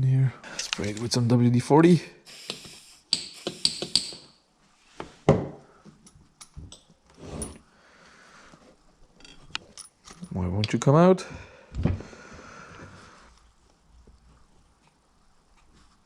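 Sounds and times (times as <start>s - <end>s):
aerosol can spraying: 2.3s - 4.3s
tools and metal parts knocking: 3.1s - 4.3s.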